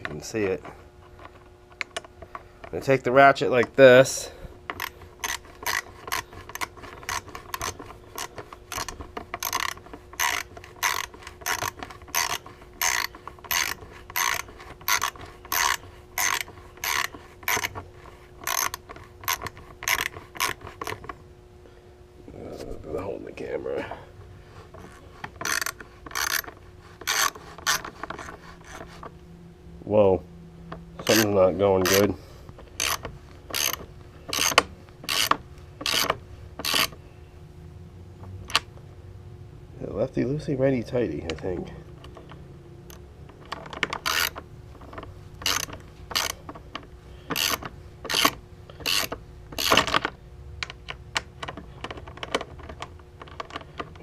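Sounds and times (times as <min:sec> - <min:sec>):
socket ratchet clicking: 0:04.7 - 0:17.8, 0:18.4 - 0:21.2, 0:24.8 - 0:28.9, 0:31.0 - 0:32.1, 0:32.7 - 0:37.0, 0:42.0 - 0:54.0.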